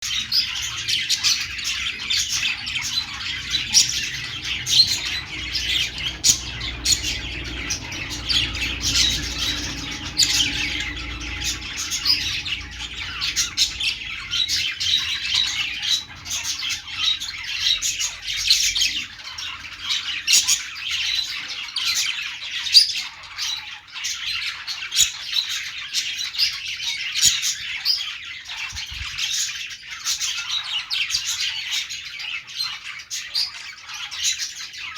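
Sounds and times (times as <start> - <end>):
budgerigars chattering: 0.0 - 26.2.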